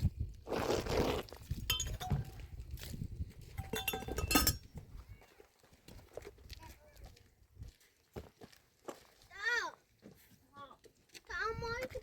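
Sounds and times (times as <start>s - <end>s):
hard objects clinking: 1.6s - 2.5s, 3.6s - 4.8s.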